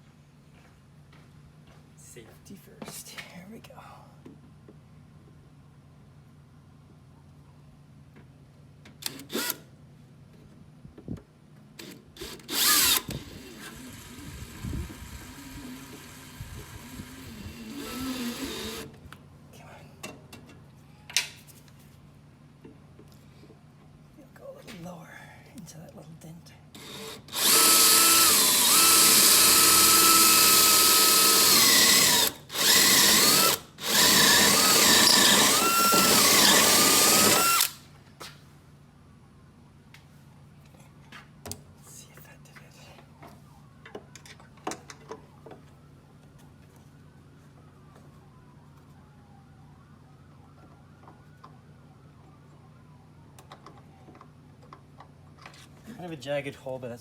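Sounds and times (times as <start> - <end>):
power drill boring through steel: 12.2 - 18.9, 26.8 - 37.8
distant siren wailing: 43.0 - 54.6.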